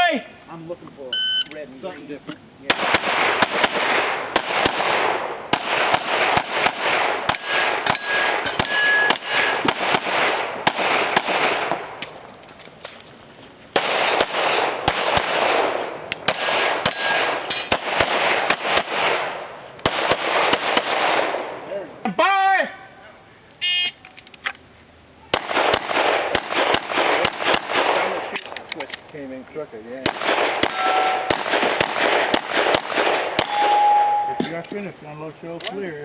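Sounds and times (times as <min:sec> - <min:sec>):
rapid pistol shots: 0:02.6 - 0:12.0, 0:13.7 - 0:21.7, 0:25.3 - 0:28.5, 0:30.0 - 0:34.0.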